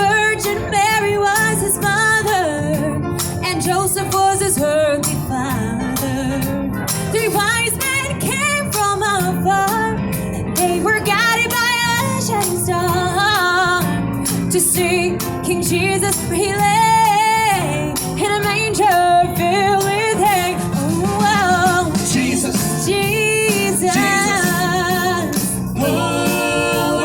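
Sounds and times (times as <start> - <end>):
instrumental accompaniment: 0.0 - 27.0
people singing a christmas song: 20.2 - 27.0.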